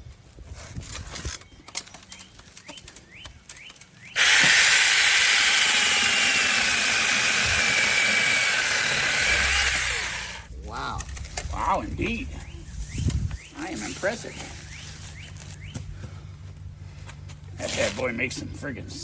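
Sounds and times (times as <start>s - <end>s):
mini chainsaw whining: 4.2s - 10.5s.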